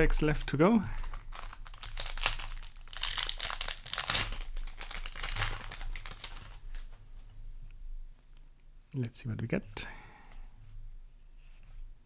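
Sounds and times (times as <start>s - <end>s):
foil wrapper crinkling and tearing: 0.0s - 7.0s.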